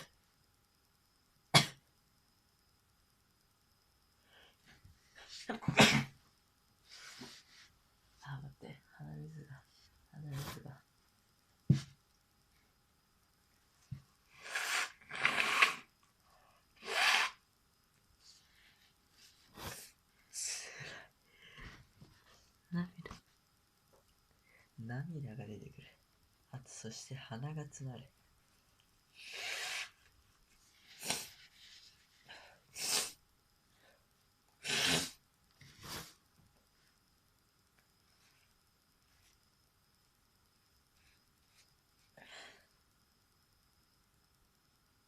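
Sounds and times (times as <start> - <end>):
person sneezing: 1.5 - 1.8, 5.4 - 6.2, 34.6 - 35.2
breathy nose blowing bursts: 14.3 - 15.9, 16.8 - 17.4, 29.2 - 30.0, 32.7 - 33.2, 34.6 - 35.2.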